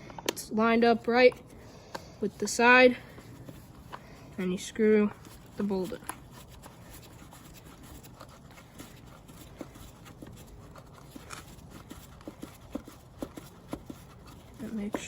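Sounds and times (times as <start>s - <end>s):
small clicks and handling noises: 5.1s - 6.2s.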